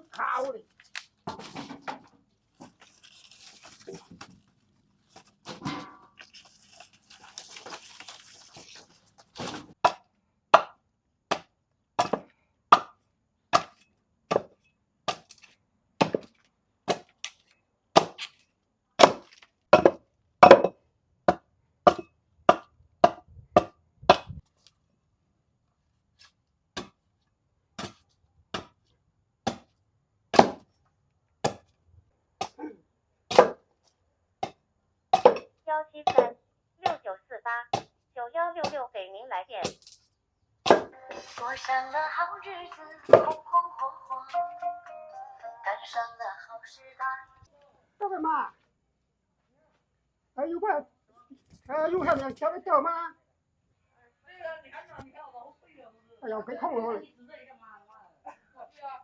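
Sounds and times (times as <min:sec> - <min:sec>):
faint handling noise: 0:00.1 - 0:09.8
knife chopping on cutting board: 0:09.4 - 0:10.0, 0:10.6 - 0:12.9, 0:13.6 - 0:14.5, 0:16.0 - 0:16.3, 0:16.9 - 0:17.1, 0:18.0 - 0:18.3, 0:19.0 - 0:20.7, 0:21.3 - 0:24.4, 0:27.8 - 0:28.0, 0:28.6 - 0:28.8, 0:29.5 - 0:29.7, 0:30.4 - 0:30.6, 0:33.3 - 0:33.6, 0:35.2 - 0:35.5, 0:36.1 - 0:36.3, 0:40.7 - 0:40.9.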